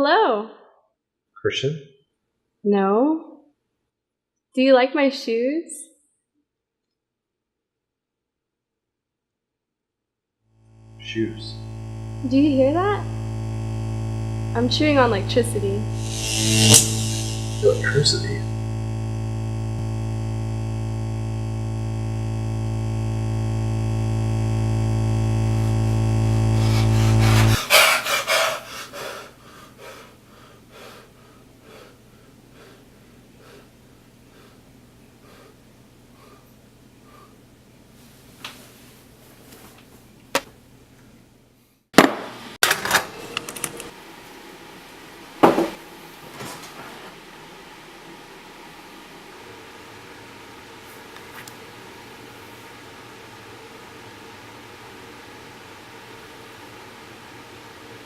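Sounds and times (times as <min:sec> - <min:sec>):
electric buzzing drone: 0:10.5 - 0:29.0
crackling noise: 0:10.6 - 0:27.8.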